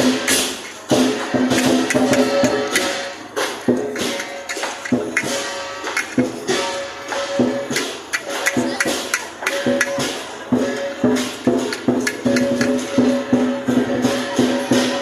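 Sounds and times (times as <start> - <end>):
clashing cymbals: 0.0 - 15.0
fast drum beats: 0.0 - 15.0.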